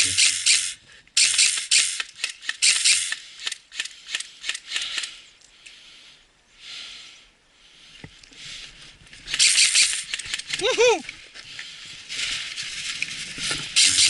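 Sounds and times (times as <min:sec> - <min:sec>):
rustling with sharp clicks: 0:09.0 - 0:14.0.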